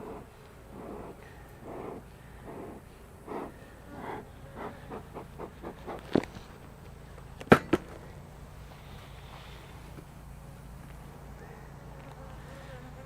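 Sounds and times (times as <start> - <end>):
soft breathy puffs: 0.0 - 13.0
sharp cracks: 4.6 - 8.1.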